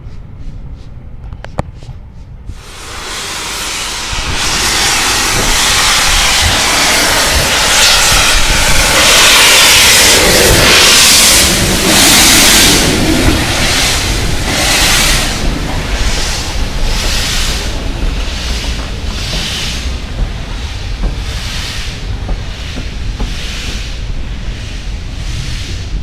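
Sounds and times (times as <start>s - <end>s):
train passing close by: 0.0s - 26.0s.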